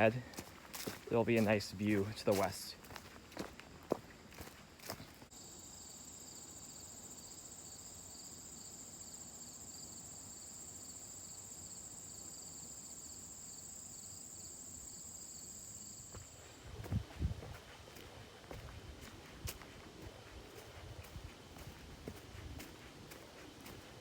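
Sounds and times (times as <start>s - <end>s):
footsteps: 0.0s - 5.3s, 16.1s - 24.0s
high-pitched insect chorus: 0.1s - 24.0s.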